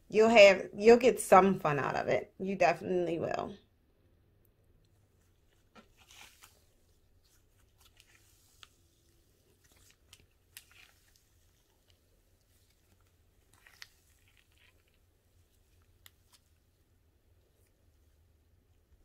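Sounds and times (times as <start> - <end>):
slime crackling and popping: 7.6 - 16.6.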